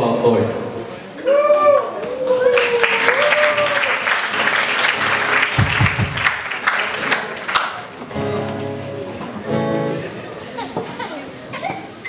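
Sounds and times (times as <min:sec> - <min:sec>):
audience applauding: 0:01.2 - 0:09.4
low thumps: 0:05.6 - 0:06.4.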